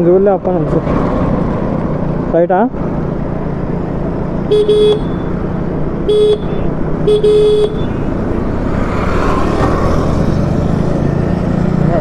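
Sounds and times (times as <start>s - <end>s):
road and engine rumble: 0.0s - 12.0s
vehicle horn honking: 4.5s - 5.4s, 6.0s - 8.2s.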